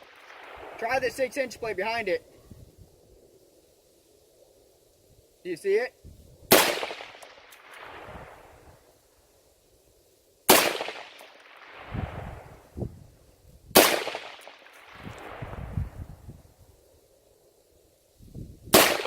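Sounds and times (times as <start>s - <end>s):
rifle shots with echo: 6.5s - 8.5s, 10.5s - 12.0s, 13.8s - 15.4s, 18.7s - 19.0s.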